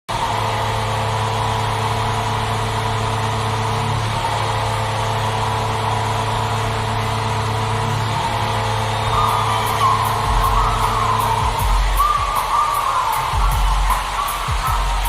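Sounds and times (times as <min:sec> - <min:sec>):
crowd cheering: 0:08.5 - 0:15.0
goal horn blaring: 0:09.0 - 0:14.9.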